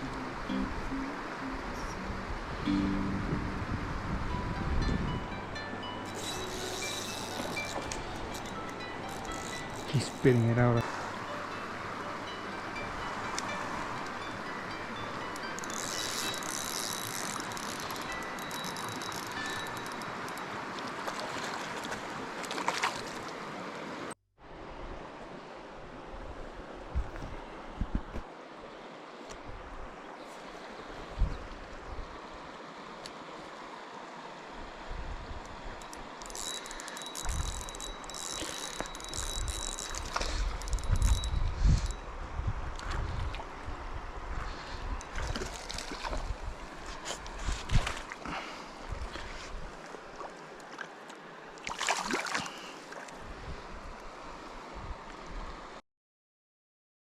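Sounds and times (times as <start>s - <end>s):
wind rumbling on microphone: 0.0s - 5.5s, 25.9s - 28.3s, 31.1s - 32.2s, 37.2s - 37.8s, 39.0s - 49.8s
stream water rushing: 0.0s - 55.8s
wind thumps on microphone: 26.9s - 28.3s.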